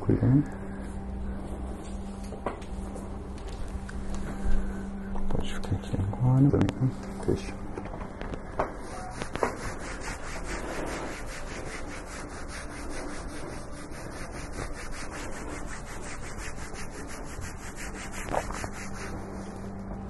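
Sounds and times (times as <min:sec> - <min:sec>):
hands rubbing skin: 0:08.7 - 0:19.8.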